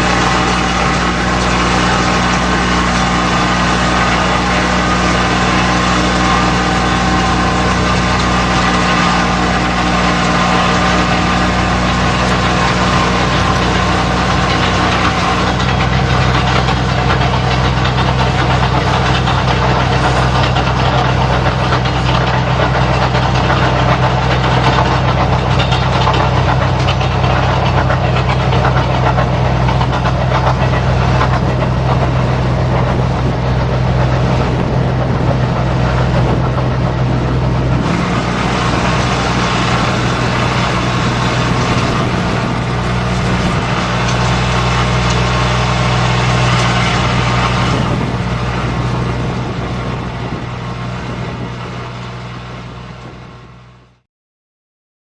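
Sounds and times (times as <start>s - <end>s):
diesel engine idling: 0.0s - 54.0s.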